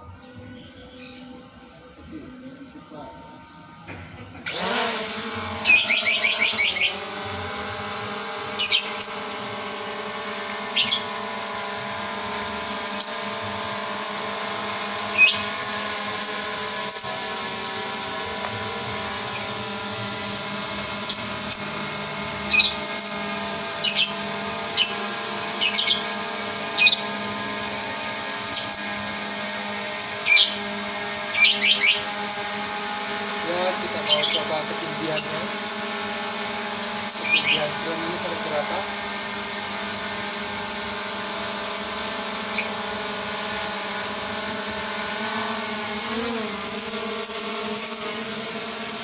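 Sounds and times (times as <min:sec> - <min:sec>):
drone motors humming: 0:00.0 - 0:49.0
sharp high-pitched chirps: 0:05.6 - 0:07.0, 0:08.6 - 0:09.6, 0:10.6 - 0:11.3, 0:12.8 - 0:13.4, 0:15.0 - 0:18.4, 0:19.2 - 0:19.7, 0:20.9 - 0:27.3, 0:28.4 - 0:29.2, 0:30.2 - 0:36.0, 0:36.8 - 0:38.9, 0:39.8 - 0:40.2, 0:42.4 - 0:42.9, 0:45.9 - 0:48.3.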